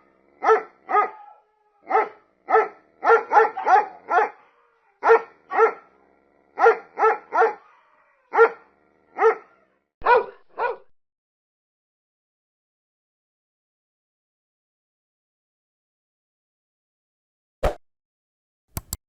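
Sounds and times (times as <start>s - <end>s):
dog barking: 0.1s - 10.9s.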